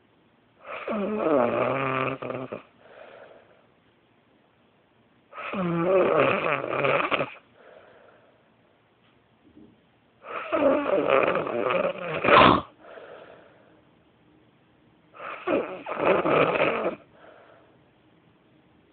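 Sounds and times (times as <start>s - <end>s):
person snoring loudly: 0.7s - 2.7s, 5.4s - 7.4s, 10.3s - 12.7s, 15.2s - 17.1s
quiet exhale: 2.8s - 3.7s, 7.5s - 8.6s, 12.8s - 13.9s, 17.1s - 17.8s.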